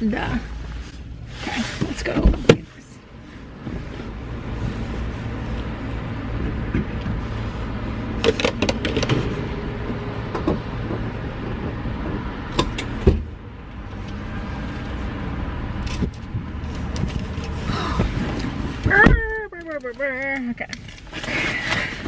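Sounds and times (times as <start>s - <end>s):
car engine and road noise: 0.0s - 22.0s
sharp clicks and knocks: 8.2s - 13.3s.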